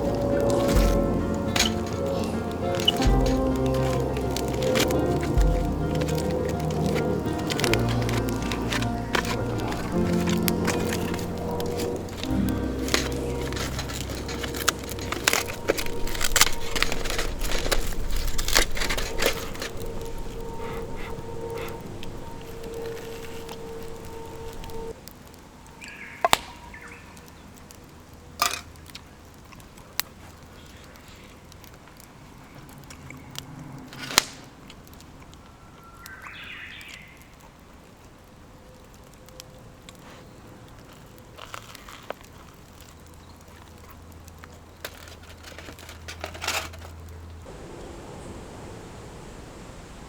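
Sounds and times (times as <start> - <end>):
camp gear clicks and knocks: 0.0 - 25.0, 28.3 - 29.1, 40.9 - 47.3
brief rustle: 44.8 - 47.0.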